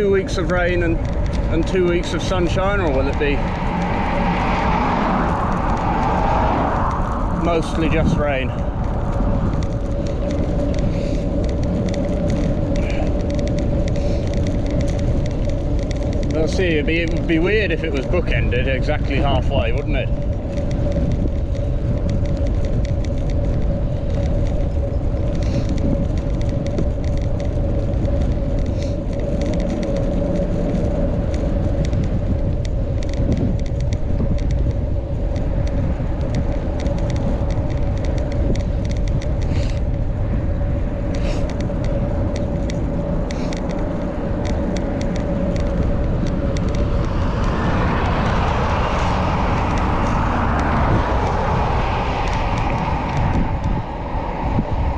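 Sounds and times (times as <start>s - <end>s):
wind and road noise: 0.0s - 54.9s.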